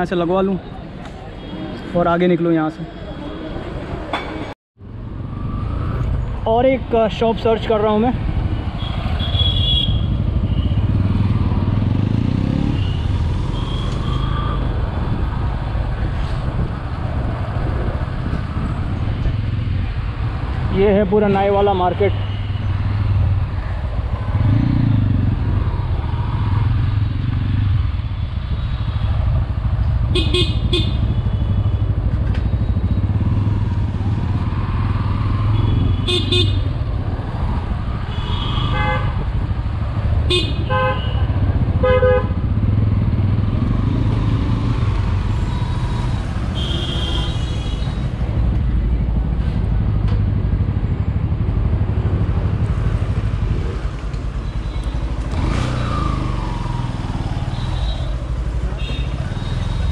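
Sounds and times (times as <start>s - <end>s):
street traffic: 0.0s - 59.9s
vehicle horn toots: 8.8s - 10.8s, 30.1s - 31.1s, 35.6s - 36.6s, 38.1s - 39.2s, 40.3s - 42.3s, 46.5s - 48.0s.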